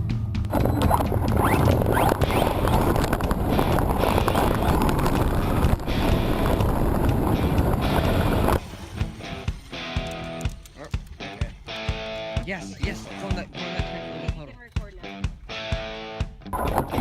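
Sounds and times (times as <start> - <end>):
wind buffeting microphone: 0.5 - 8.6
motor whine: 0.5 - 8.9
rc truck driving over rough ground: 0.5 - 10.8.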